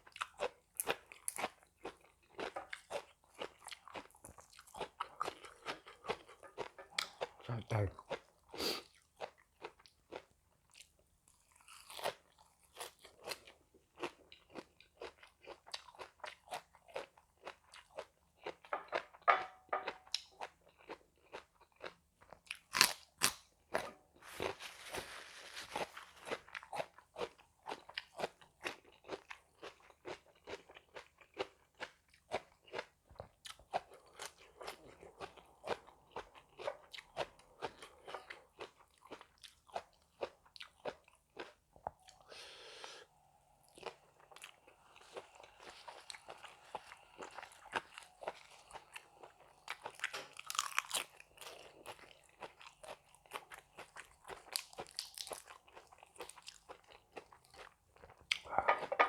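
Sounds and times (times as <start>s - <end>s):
person chewing crunchy food: 0.0s - 59.0s
rustling noise: 24.2s - 26.3s.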